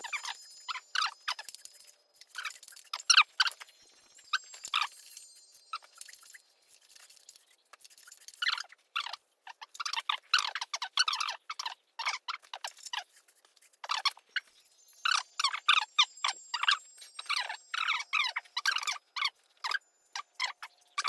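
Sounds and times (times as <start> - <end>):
metallic clicks and scrapes: 0.0 - 14.6.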